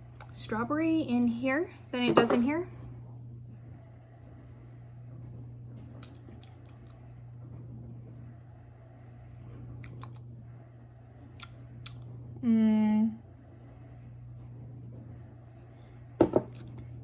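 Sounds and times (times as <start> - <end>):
steady low hum: 0.0 - 17.0
person sipping and chewing: 9.8 - 10.2, 11.3 - 12.1
person humming mmm: 12.4 - 13.2.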